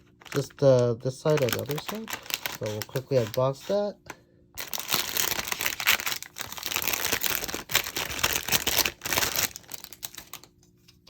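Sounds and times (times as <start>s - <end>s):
plastic packaging crinkling: 0.1s - 3.9s, 4.6s - 11.0s.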